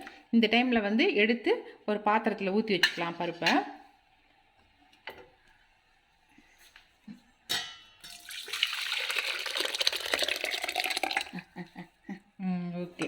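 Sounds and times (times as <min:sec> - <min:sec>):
lentils pouring wetly: 0:08.2 - 0:11.3.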